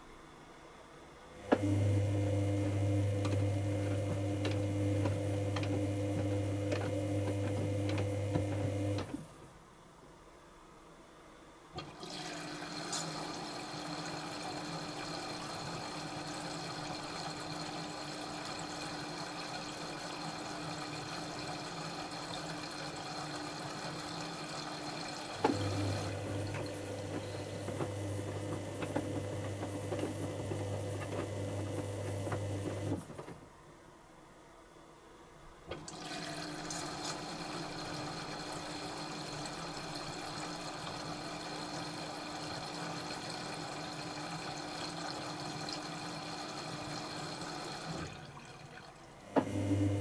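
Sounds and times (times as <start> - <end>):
water rushing in filling: 11.8 - 31.4, 35.8 - 50.0.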